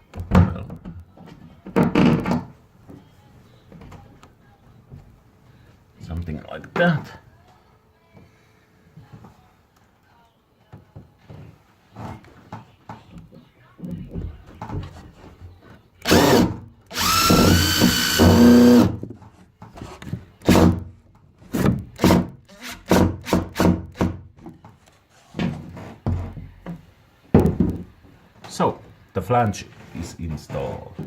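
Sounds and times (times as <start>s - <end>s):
cordless drill driving screw: 16.0s - 19.0s.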